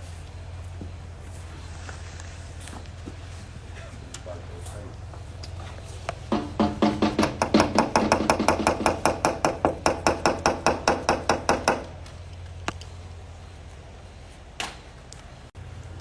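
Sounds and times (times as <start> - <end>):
rapid sharp knocks: 6.3 - 12.0.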